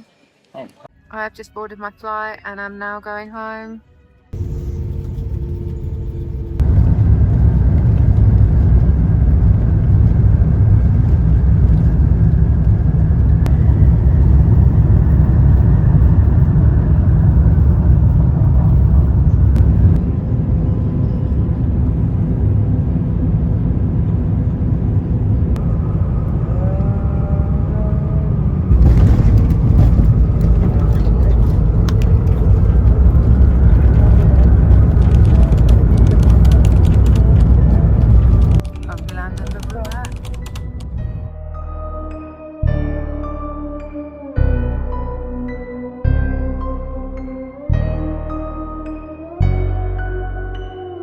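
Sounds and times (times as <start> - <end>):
airliner engines rumbling in cabin: 4.4 - 41.1.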